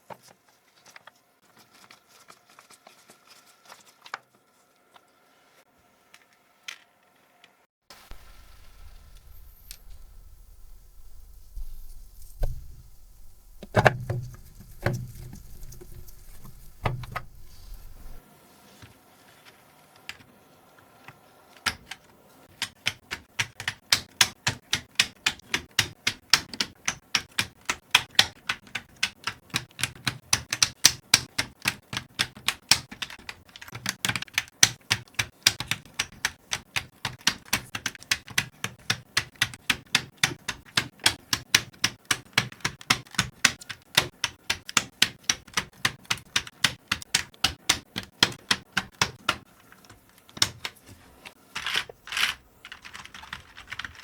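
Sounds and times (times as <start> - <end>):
handling knocks and taps: 8.1 - 18.2, 22.6 - 51.4
keyboard keys clicking: 8.1 - 18.2, 21.6 - 50.9, 51.6 - 54.0.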